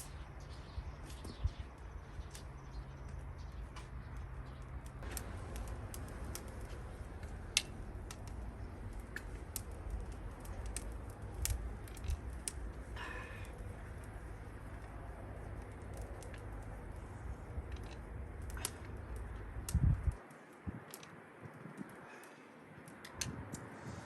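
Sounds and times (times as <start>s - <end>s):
campfire crackling: 0.0s - 24.0s
low steady rumble: 5.0s - 20.2s.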